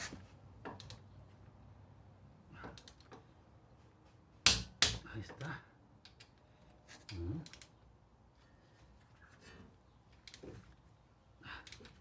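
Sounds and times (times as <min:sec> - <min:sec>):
tools clicking and tapping: 0:00.6 - 0:01.1, 0:04.5 - 0:05.1.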